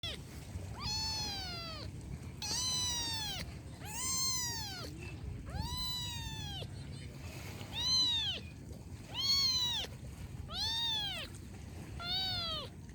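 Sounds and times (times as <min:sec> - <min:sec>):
kitten meowing: 0:00.0 - 0:06.7, 0:07.7 - 0:08.5, 0:09.1 - 0:09.9, 0:10.5 - 0:11.3, 0:12.0 - 0:12.7.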